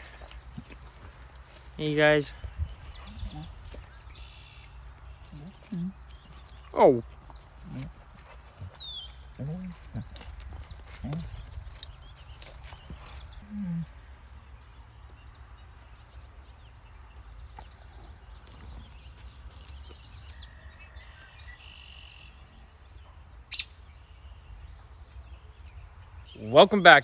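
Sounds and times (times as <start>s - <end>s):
faint bird chirps: 1.8s - 6.7s, 17.0s - 26.5s.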